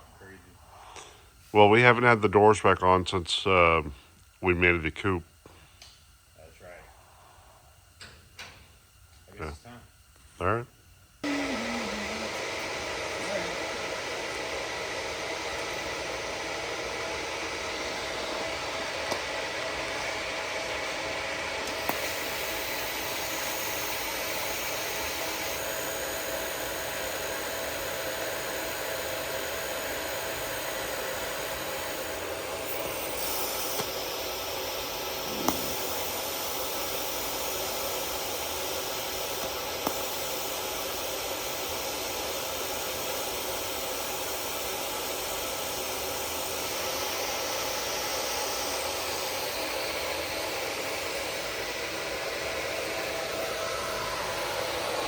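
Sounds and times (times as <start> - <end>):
steady hissing noise: 0.0 - 12.4, 21.6 - 55.0.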